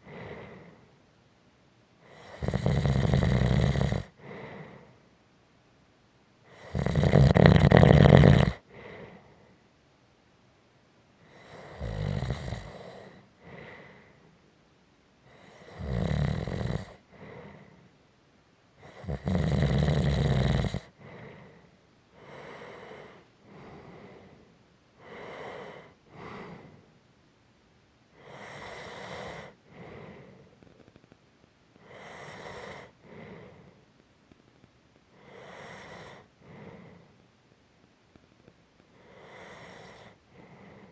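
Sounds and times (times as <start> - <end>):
person snoring: 2.1 - 4.4, 6.6 - 8.6, 18.9 - 21.3.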